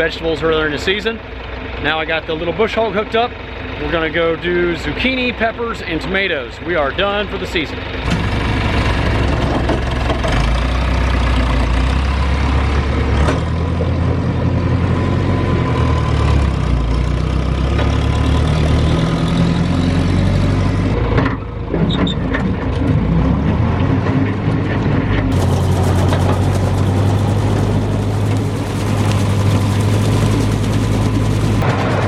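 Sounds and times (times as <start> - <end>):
tractor engine running: 0.0 - 32.0.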